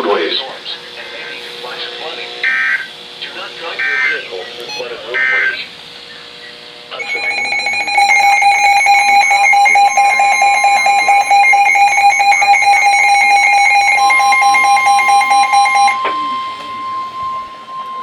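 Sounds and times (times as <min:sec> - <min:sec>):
rapidly pulsing electronic alarm: 0:03.8 - 0:05.7, 0:06.9 - 0:18.0
steady high tone: 0:06.9 - 0:18.0.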